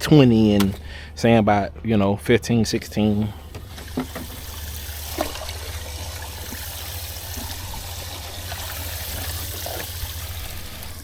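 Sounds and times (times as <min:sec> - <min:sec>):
water washing: 0:02.8 - 0:11.0.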